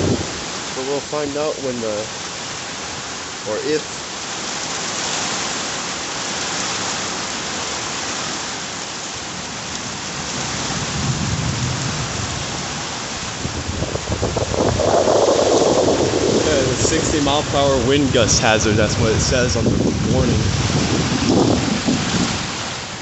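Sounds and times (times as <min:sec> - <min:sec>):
thunder rumble: 0:00.0 - 0:00.6, 0:10.6 - 0:22.6
heavy rain hissing: 0:00.0 - 0:23.0.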